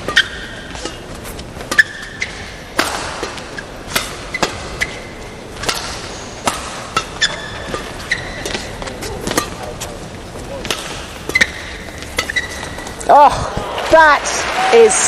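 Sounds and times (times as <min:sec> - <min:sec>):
shoes squeaking on court: 0:00.0 - 0:13.7
rackets striking shuttlecock: 0:00.0 - 0:14.0.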